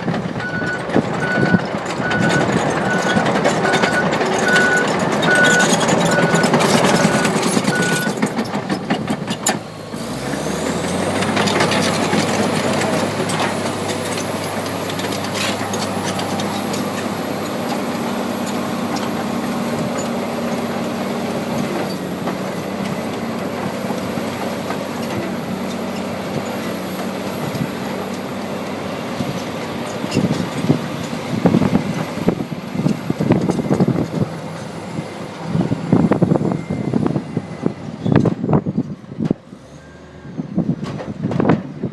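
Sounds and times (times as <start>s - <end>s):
clanks and knocks: 0.0s - 9.6s
bulldozer diesel engine revving: 0.0s - 41.9s.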